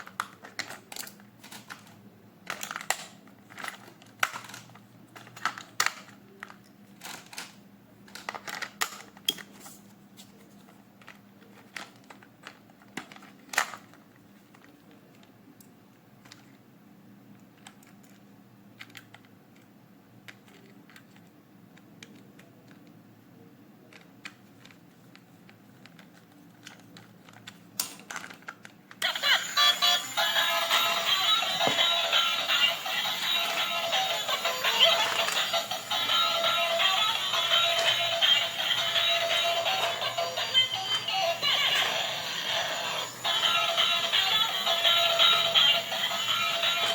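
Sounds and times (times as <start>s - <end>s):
plastic packaging rustling: 2.5s - 7.5s, 8.1s - 14.9s
music: 29.0s - 46.9s.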